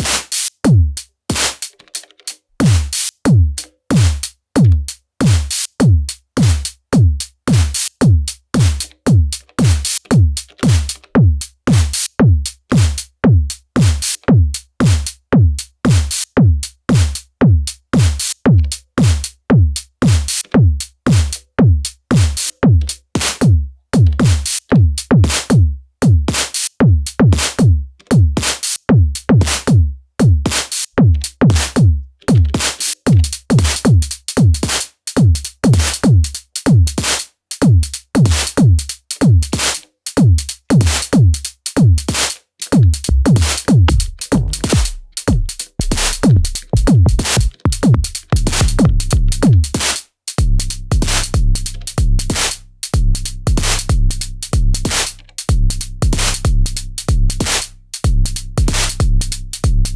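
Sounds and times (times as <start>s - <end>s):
electronic kick drum: 0.0s - 1.5s, 2.6s - 37.0s, 37.6s - 39.6s, 40.2s - 59.9s
crisp electronic drum hits: 43.1s - 49.6s.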